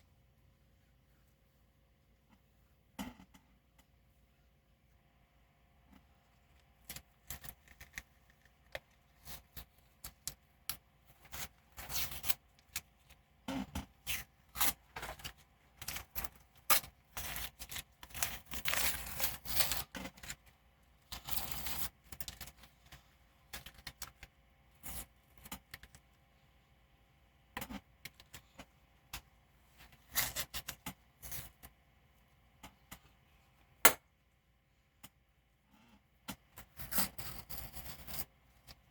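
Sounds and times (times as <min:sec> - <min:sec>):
scraping and tearing: 0:13.9 - 0:20.5, 0:21.1 - 0:22.6.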